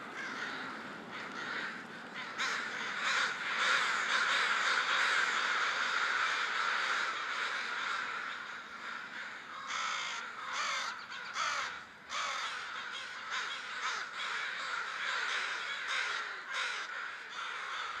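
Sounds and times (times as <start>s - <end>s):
flock of crows cawing: 0.0s - 18.0s.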